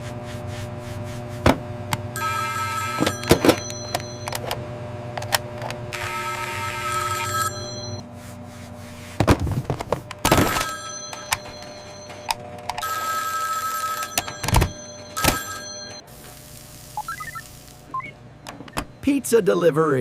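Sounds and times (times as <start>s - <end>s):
sharp knocks and thuds: 1.4s - 1.7s, 9.2s - 10.4s
telephone ringing: 2.1s - 4.6s, 5.9s - 8.0s, 10.3s - 16.1s.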